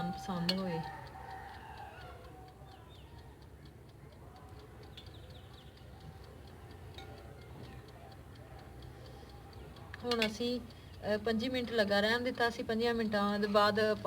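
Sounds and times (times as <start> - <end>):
mechanical timer ticking: 0.0 - 14.0.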